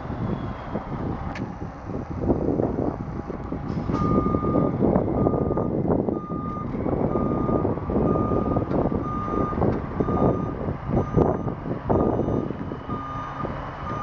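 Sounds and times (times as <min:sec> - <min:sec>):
road-milling machinery rumble: 0:00.0 - 0:14.0
backup alarm beeping: 0:04.0 - 0:14.0.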